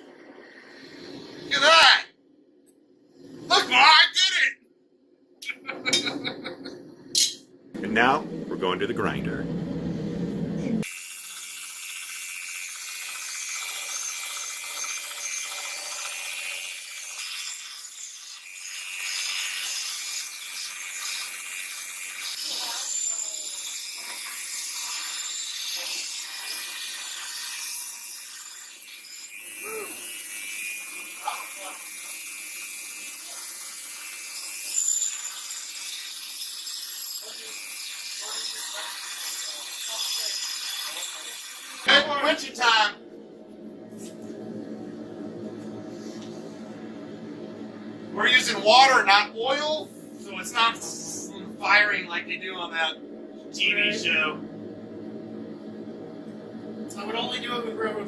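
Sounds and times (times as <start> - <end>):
grinder grinding steel: 10.8 - 42.0.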